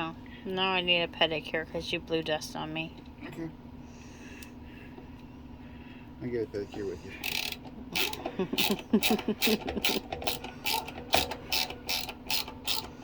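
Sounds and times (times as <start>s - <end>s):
hand ratchet clicking: 7.2s - 13.0s.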